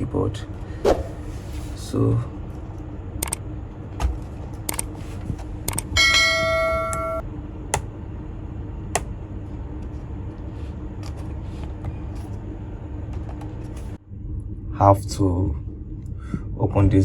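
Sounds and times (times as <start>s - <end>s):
low steady hum: 0.0s - 17.0s
bell-like metallic ring: 6.0s - 7.2s.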